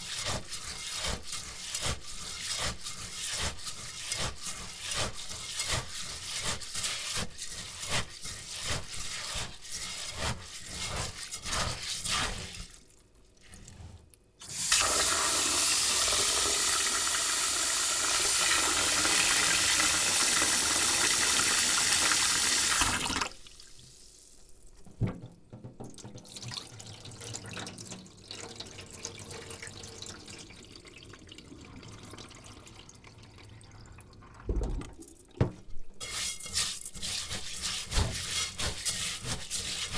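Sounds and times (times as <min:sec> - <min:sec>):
rice scrubbed by hand: 0:00.0 - 0:14.1, 0:36.0 - 0:39.9
rice and water stirred: 0:00.0 - 0:24.6, 0:35.1 - 0:39.9.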